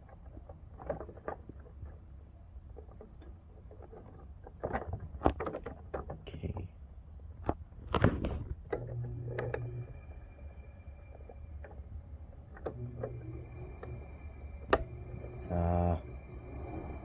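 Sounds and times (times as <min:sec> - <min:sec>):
air conditioner hum: 0:00.0 - 0:17.0
faint high whine: 0:08.7 - 0:17.0.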